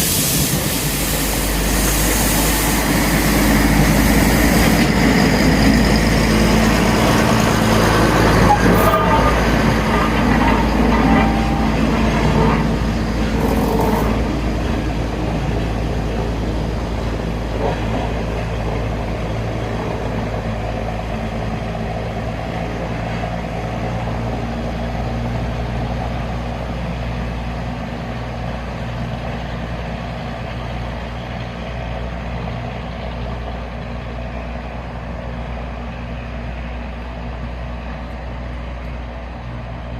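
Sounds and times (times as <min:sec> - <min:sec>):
hiss: 0:00.0 - 0:04.8
diesel locomotive engine humming: 0:00.0 - 0:39.9
high squealing tones: 0:08.4 - 0:14.3.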